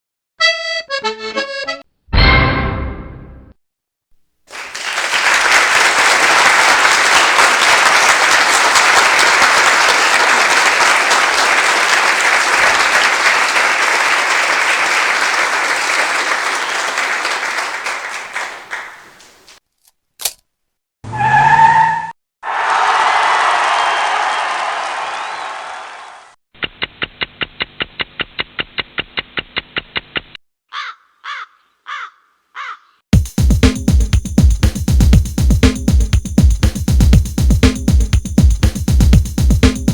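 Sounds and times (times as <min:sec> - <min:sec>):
crowd clapping: 0:04.5 - 0:19.6, 0:22.5 - 0:26.4, 0:33.6 - 0:39.9
sharp click: 0:20.2 - 0:20.5.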